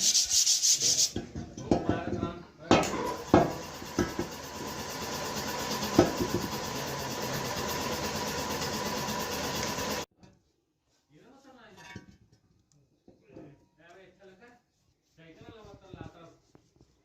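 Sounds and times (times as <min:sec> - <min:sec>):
workshop machine whining: 0:02.8 - 0:10.1.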